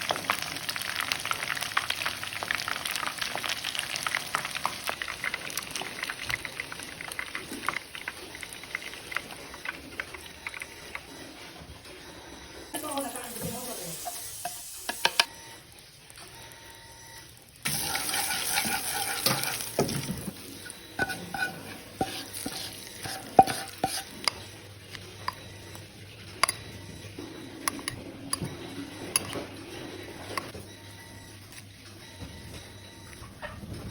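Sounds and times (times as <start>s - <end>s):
food sizzling in hot oil: 12.8s - 15.3s, 17.4s - 24.1s
utensil clinking and scraping pan: 17.7s - 24.5s.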